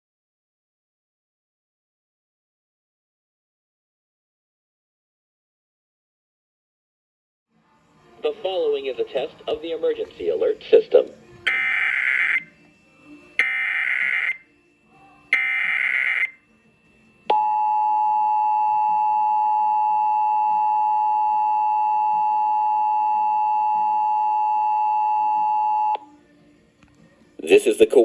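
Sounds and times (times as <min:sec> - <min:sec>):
two-tone attention signal: 0:11.5 - 0:12.6, 0:13.3 - 0:14.6, 0:15.3 - 0:16.4, 0:17.2 - 0:26.0.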